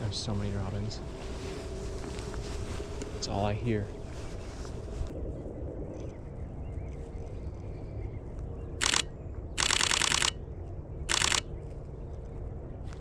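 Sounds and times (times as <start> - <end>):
camera shutter bursts: 8.8 - 10.4, 11.1 - 11.5.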